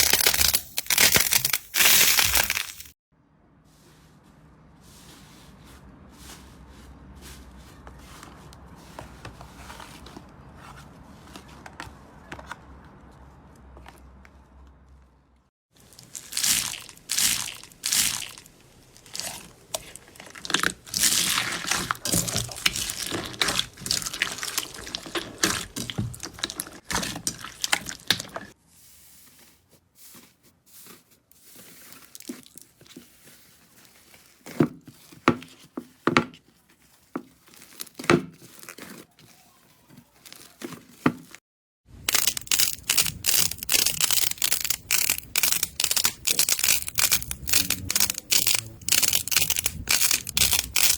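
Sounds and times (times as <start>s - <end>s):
slime popping and squishing: 0.0s - 2.9s, 15.9s - 28.3s, 42.0s - 50.9s
slime crackling: 0.0s - 3.0s, 15.8s - 28.6s, 42.0s - 50.9s.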